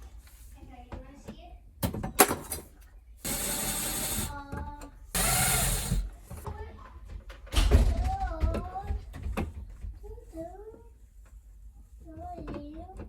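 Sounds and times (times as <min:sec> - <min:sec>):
power drill running: 0:03.2 - 0:04.5, 0:05.1 - 0:06.2.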